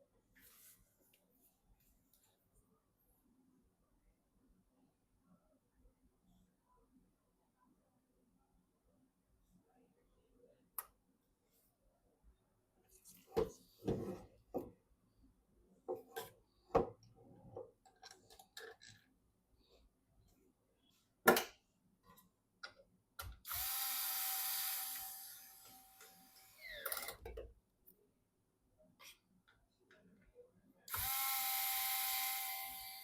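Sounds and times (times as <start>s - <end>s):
small power tool whirring: 23.5s - 27.2s, 30.9s - 33.0s.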